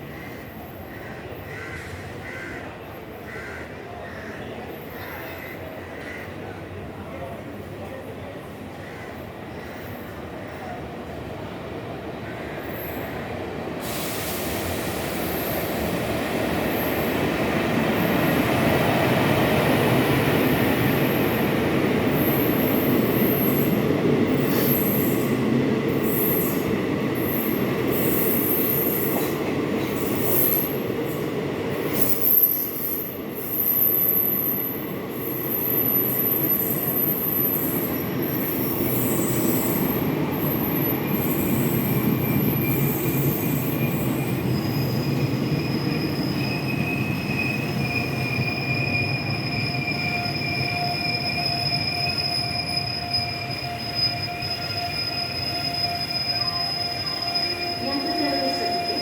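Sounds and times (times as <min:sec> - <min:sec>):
train coaches rumbling on track: 0:00.0 - 0:59.0
wheel and brake squeal: 0:22.1 - 0:25.4, 0:26.0 - 0:30.8, 0:31.9 - 0:59.0.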